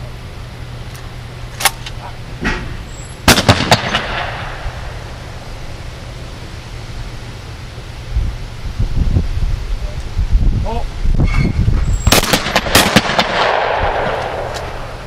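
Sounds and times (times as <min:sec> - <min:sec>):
shotgun shots: 0:03.2 - 0:04.6, 0:12.0 - 0:14.8.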